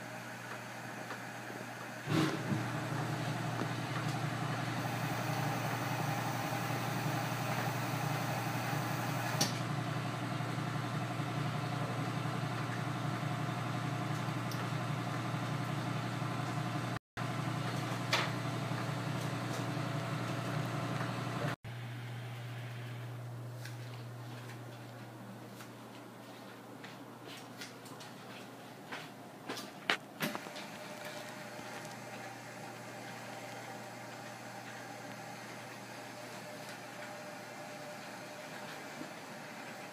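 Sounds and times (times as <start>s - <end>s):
low machine hum: 0.0s - 25.6s.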